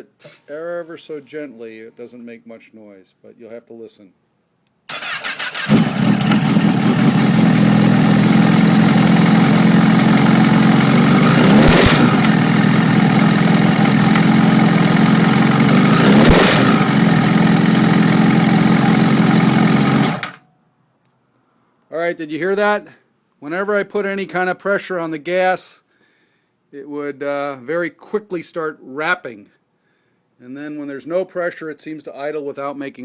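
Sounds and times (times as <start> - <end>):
engine throttle blips: 4.9 - 20.4
motorcycle engine idling: 4.9 - 20.4
engine knocking: 5.6 - 20.4.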